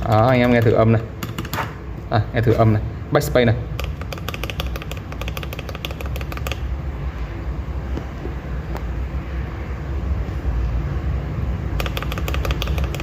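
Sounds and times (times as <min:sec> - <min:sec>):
steady low hum: 0:00.0 - 0:13.0
mechanical keyboard typing: 0:03.8 - 0:06.7, 0:11.8 - 0:13.0.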